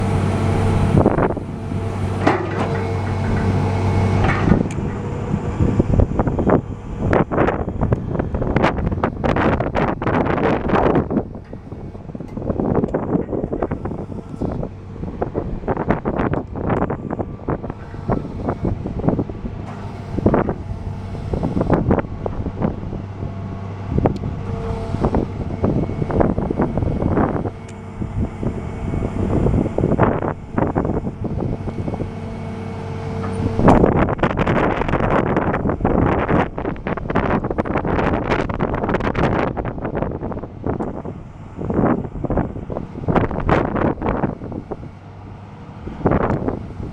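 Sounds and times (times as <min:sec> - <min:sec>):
excavator diesel engine running: 0:00.0 - 0:46.9
knocks and clanks: 0:02.2 - 0:05.1.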